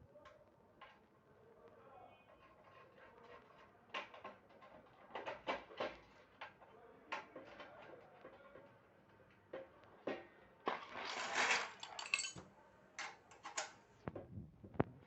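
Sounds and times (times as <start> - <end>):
hard parts clicking and clinking: 10.8 - 13.7.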